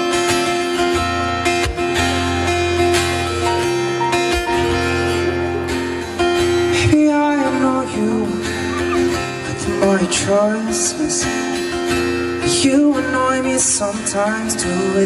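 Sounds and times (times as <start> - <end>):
acoustic guitar strumming: 0.0 - 15.0
man singing: 6.6 - 15.0.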